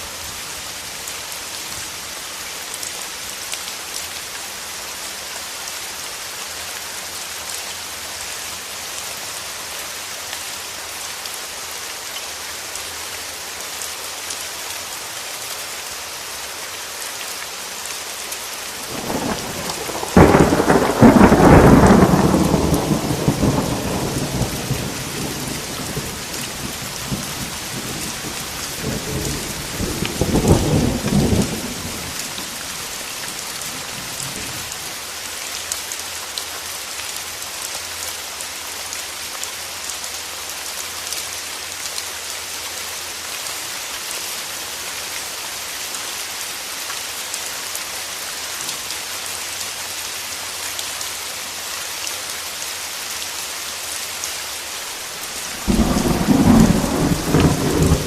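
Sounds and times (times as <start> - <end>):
heavy rain hissing: 0.0 - 39.2, 40.2 - 58.0
thunder rolling: 18.9 - 32.5, 55.4 - 58.0.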